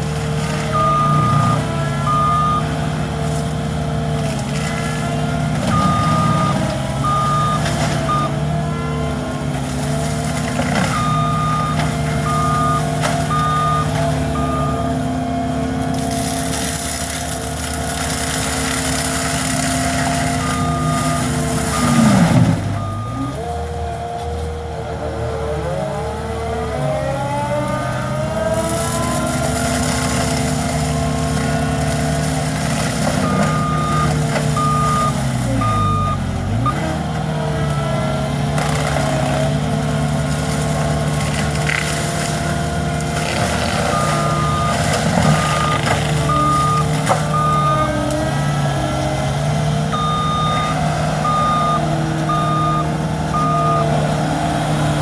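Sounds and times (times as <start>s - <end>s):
skid steer loader engine running hard: 0.0s - 55.0s
reversing alarm beeps: 0.7s - 2.7s, 5.4s - 9.0s, 10.8s - 15.0s, 20.3s - 23.4s, 33.2s - 36.9s, 43.8s - 48.1s, 49.9s - 54.0s.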